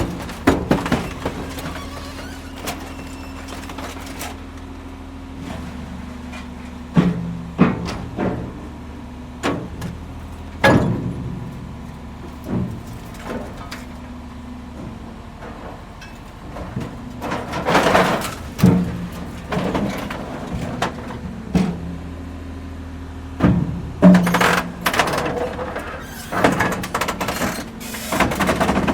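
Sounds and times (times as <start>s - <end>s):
rattling and scraping: 0.0s - 4.7s, 14.8s - 21.8s, 23.4s - 28.9s
construction machine engine running: 0.0s - 28.9s.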